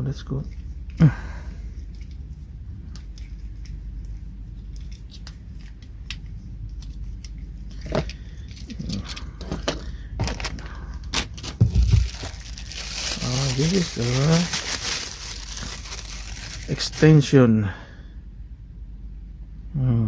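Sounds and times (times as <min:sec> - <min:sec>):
parts clicking and clinking: 0:04.8 - 0:12.3.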